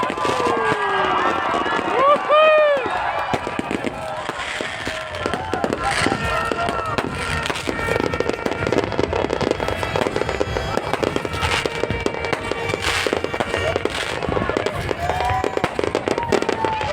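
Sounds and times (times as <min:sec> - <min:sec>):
fireworks bangs and crackles: 0:00.0 - 0:16.9
fireworks hissing bursts: 0:00.0 - 0:16.9.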